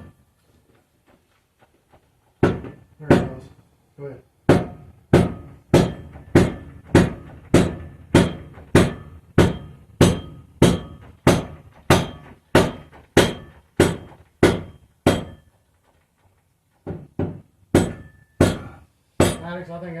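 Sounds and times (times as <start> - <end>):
mallet striking metal exhaust: 4.5 - 15.5, 17.7 - 19.6.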